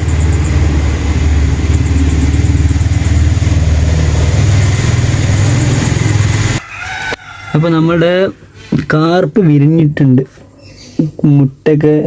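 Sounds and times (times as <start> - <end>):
small engine running: 0.0 - 6.6.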